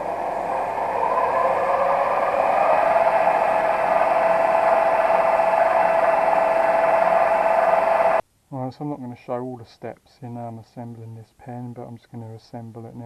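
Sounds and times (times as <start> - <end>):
lathe running with whine: 0.0 - 8.2.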